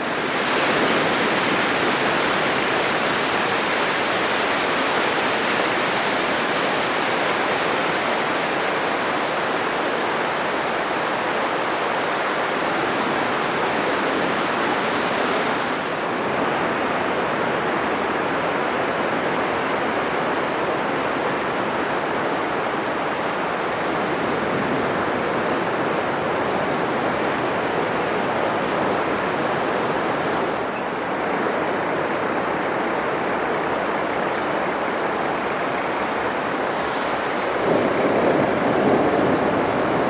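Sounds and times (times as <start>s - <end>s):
surf breaking on beach: 22.5s - 40.0s.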